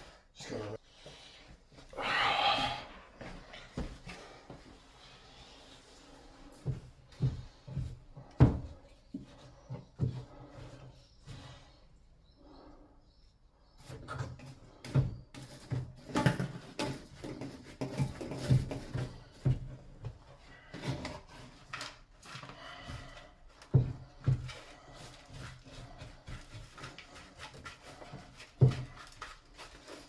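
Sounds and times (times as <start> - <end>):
knocks and thuds of wood: 6.6 - 10.4.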